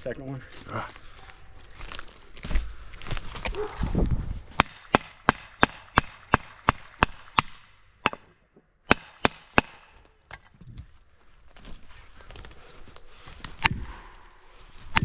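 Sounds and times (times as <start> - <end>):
blows striking wood: 3.4 - 10.5, 13.4 - 15.0.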